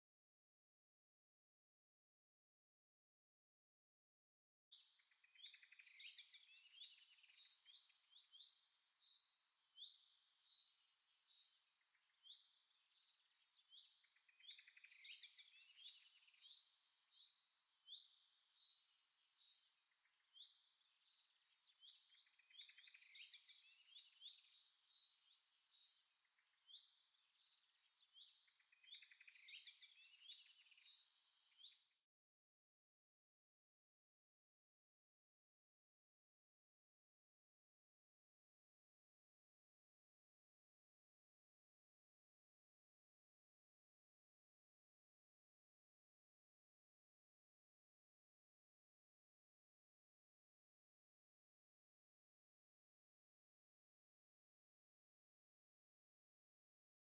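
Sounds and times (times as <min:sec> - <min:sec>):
birds chirping and trilling: 0:04.8 - 0:31.8.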